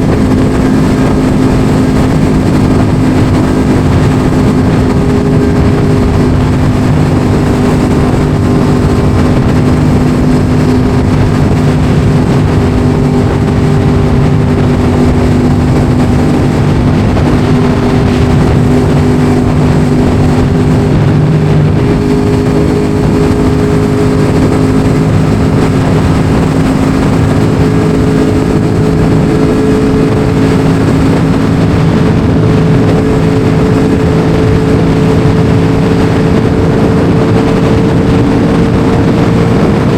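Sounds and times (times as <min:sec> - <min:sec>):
motorcycle engine cruising: 0:00.0 - 0:39.9
wind noise: 0:00.0 - 0:39.9.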